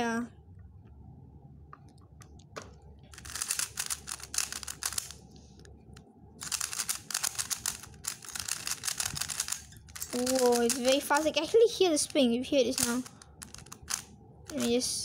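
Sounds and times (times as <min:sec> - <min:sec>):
speed cube clacking: 0:03.1 - 0:05.2, 0:06.4 - 0:14.8.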